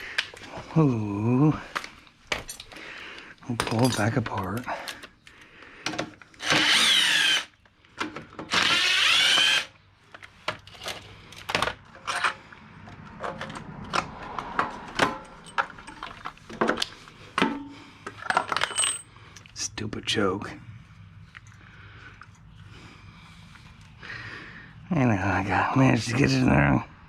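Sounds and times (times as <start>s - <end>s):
clicks and knocks of parts: 1.7s - 19.6s
cordless power driver running: 6.4s - 7.6s, 8.5s - 9.8s.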